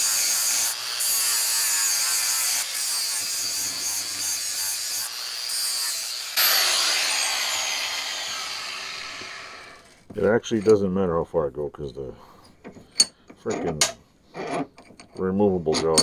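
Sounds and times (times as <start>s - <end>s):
angle grinder grinding metal: 0.0s - 10.1s.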